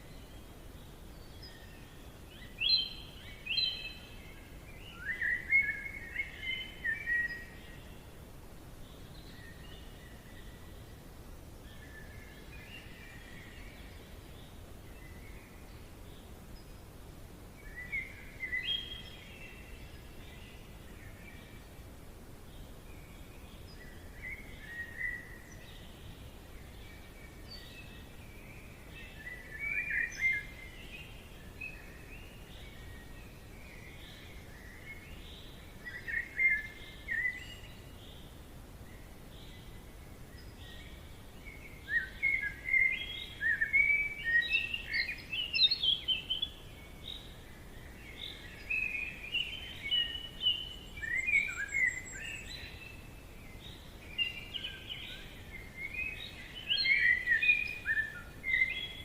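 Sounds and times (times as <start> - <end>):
bird chirping: 0.0 - 8.1, 17.6 - 21.8, 22.6 - 59.0
low forest background hiss: 0.0 - 59.0.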